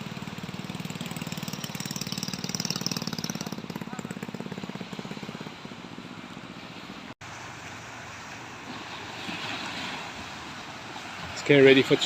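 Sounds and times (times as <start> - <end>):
small engine running: 0.0 - 5.6.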